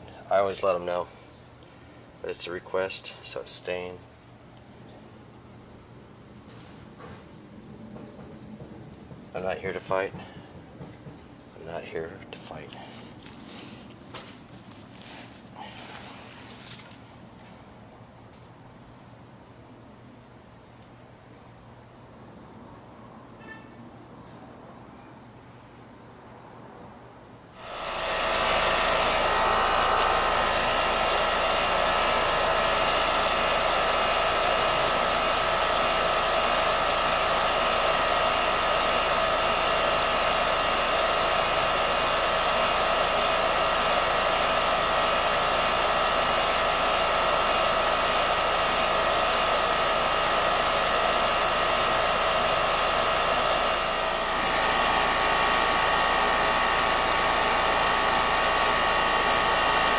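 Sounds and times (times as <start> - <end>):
machine whirring: 27.6 - 59.9
steady machine whine: 27.6 - 59.9.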